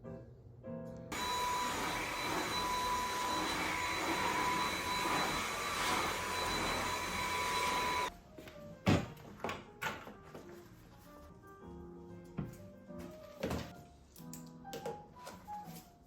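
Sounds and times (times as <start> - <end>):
electric fan appliance whirring: 1.1 - 8.1.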